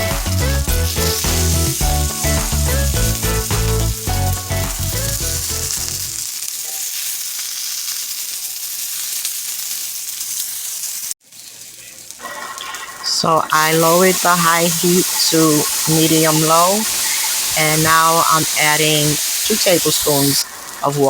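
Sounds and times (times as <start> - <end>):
background music: 0.0 - 6.1
vegetables sizzling in oil: 0.0 - 21.0.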